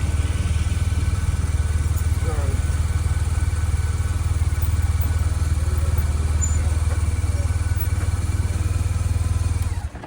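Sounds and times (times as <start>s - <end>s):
motorcycle and road noise: 0.0s - 10.0s.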